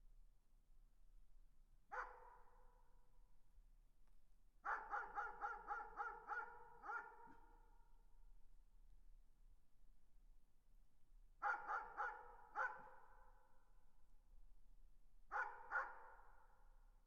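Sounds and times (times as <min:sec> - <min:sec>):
distant dog barking: 0:01.9 - 0:02.4, 0:04.7 - 0:07.4, 0:11.4 - 0:12.9, 0:15.3 - 0:16.2.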